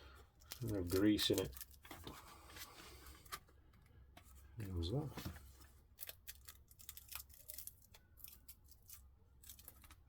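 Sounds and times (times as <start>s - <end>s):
paper pages crackling apart: 0.5s - 2.1s.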